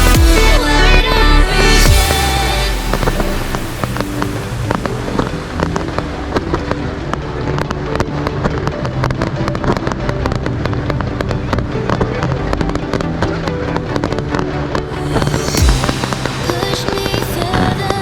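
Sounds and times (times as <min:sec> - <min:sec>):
background music: 0:00.0 - 0:18.0
fireworks bangs and crackles: 0:01.6 - 0:18.0.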